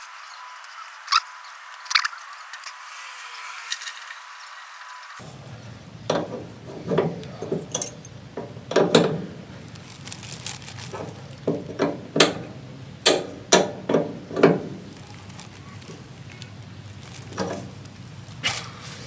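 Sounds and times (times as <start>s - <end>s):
metal tools clinking: 6.7s - 9.1s.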